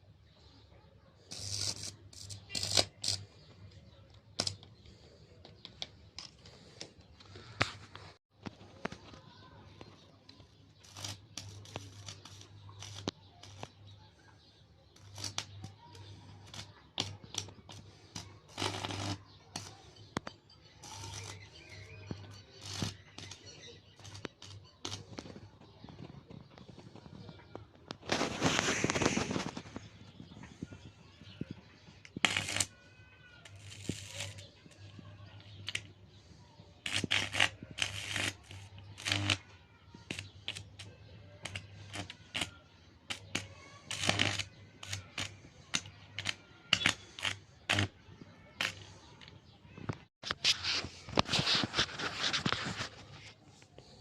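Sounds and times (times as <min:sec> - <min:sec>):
welding arc crackling: 0:01.3 - 0:03.2, 0:10.8 - 0:13.8, 0:15.0 - 0:15.5, 0:16.2 - 0:19.7, 0:20.8 - 0:21.6, 0:22.6 - 0:25.1, 0:32.1 - 0:32.7, 0:33.5 - 0:34.8, 0:36.8 - 0:39.4, 0:40.1 - 0:42.5, 0:43.1 - 0:48.0.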